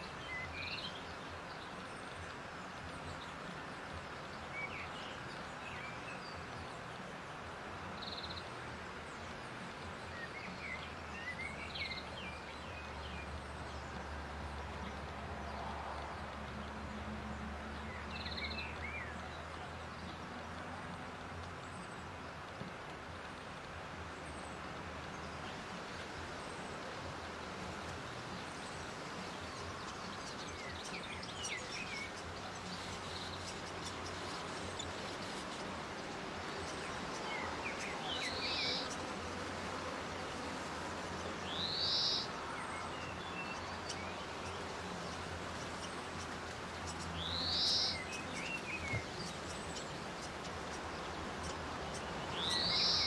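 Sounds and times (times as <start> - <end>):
birds chirping: 0.0 - 53.0.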